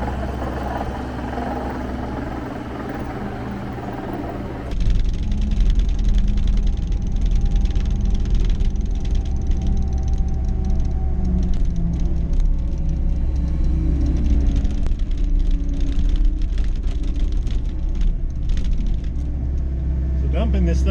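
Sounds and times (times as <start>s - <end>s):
diesel engine under load: 0.0s - 4.8s
grit and gravel ticking: 0.0s - 19.8s.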